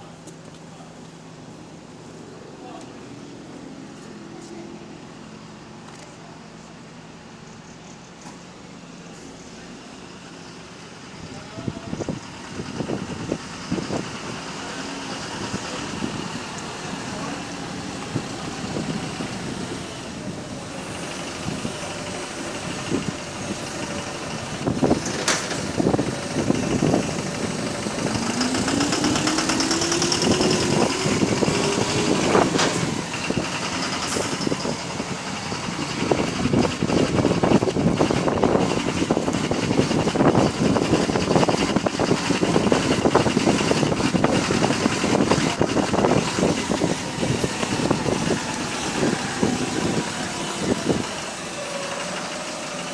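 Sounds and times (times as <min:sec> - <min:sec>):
rising whine: 0:25.8 - 0:33.4.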